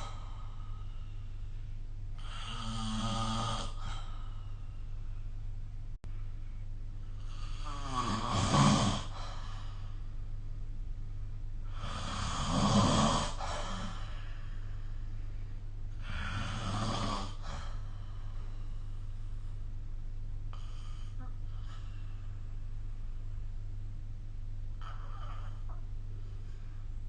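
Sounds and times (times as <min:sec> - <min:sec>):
steady low hum: 0:00.0 - 0:27.0
person snoring: 0:02.2 - 0:04.3, 0:07.2 - 0:10.0, 0:11.6 - 0:14.6, 0:16.0 - 0:17.9, 0:24.8 - 0:25.8.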